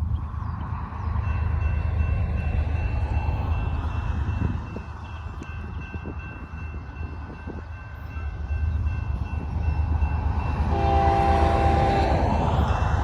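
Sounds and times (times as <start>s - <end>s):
diesel locomotive engine rumble: 0.0s - 13.0s
locomotive horn: 10.6s - 12.3s.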